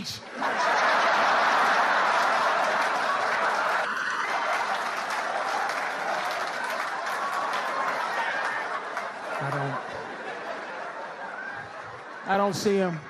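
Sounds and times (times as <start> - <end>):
audience laughing: 0.2 - 13.0
audience applauding: 0.4 - 13.0.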